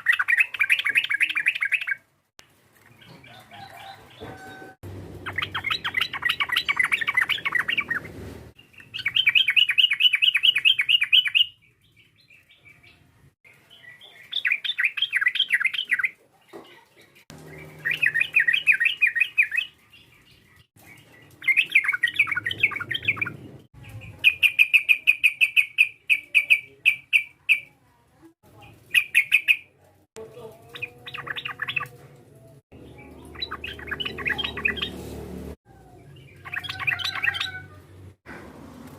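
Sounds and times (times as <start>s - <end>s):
bulbul singing chattering phrases: 0.0s - 2.0s, 5.2s - 8.0s, 13.6s - 20.2s, 21.0s - 27.7s, 28.5s - 32.0s, 32.8s - 35.0s.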